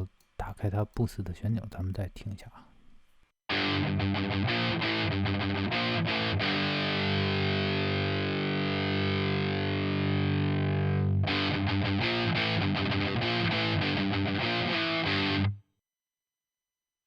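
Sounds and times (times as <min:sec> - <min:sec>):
distorted electric guitar: 0:03.5 - 0:15.6.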